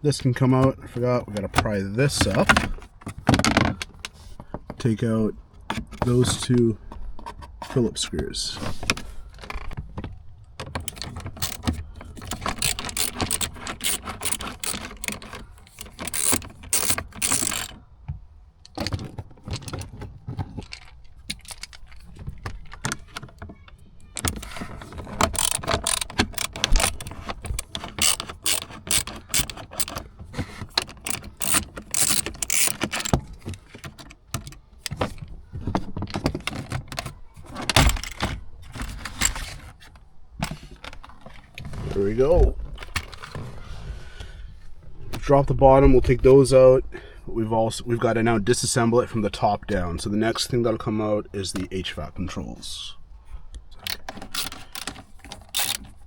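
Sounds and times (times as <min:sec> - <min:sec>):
hand ratchet clicking: 0:10.9 - 0:17.8, 0:24.2 - 0:30.1, 0:30.7 - 0:33.2, 0:53.9 - 0:55.8.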